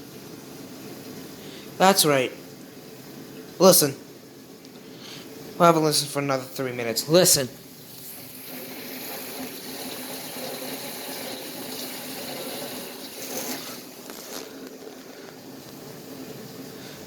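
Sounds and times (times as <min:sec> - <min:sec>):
dishwasher water splashing: 0:05.9 - 0:14.6.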